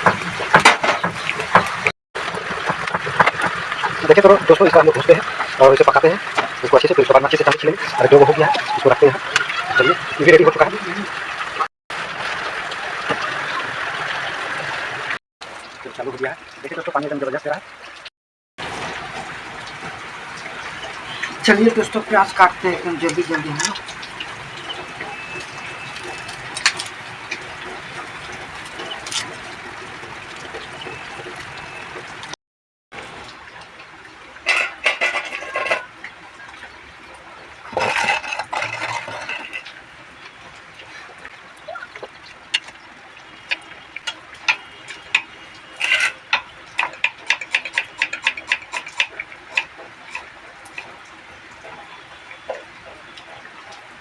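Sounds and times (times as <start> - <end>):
heavily pouring water: 33.0 - 54.0.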